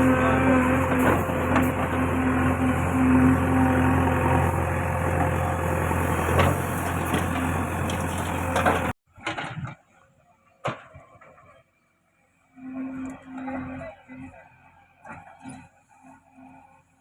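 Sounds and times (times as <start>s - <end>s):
diesel engine running: 0.0s - 9.0s.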